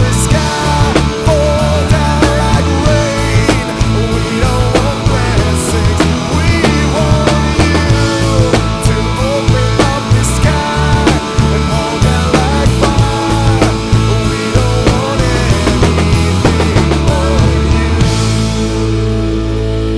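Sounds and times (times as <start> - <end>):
drum beats: 0.0 - 19.9
instrumental rock music: 0.0 - 19.9
melodic lead guitar line: 0.0 - 19.9.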